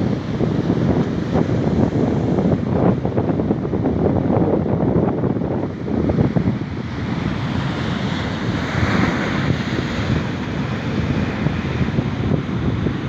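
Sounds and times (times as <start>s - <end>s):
wind buffeting microphone: 0.0s - 13.0s
sea waves washing onto beach: 5.6s - 13.0s.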